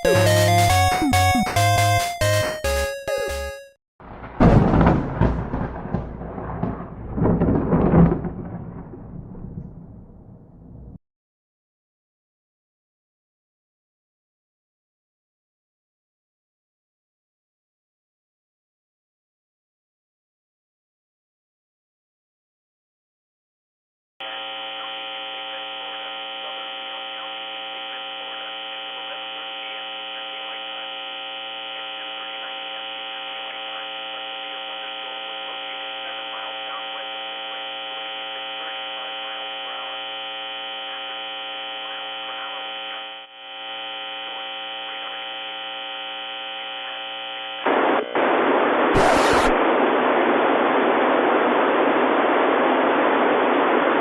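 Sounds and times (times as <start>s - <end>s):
radio receiver electrical hum: 24.2s - 54.0s
radio static hiss: 24.2s - 54.0s.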